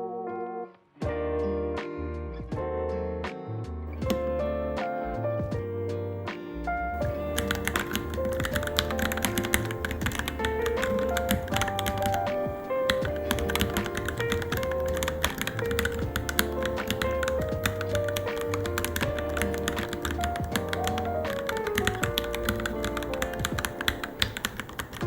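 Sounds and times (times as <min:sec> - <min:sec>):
background music with melody: 0:00.0 - 0:25.0
mechanical keyboard typing: 0:07.1 - 0:25.0.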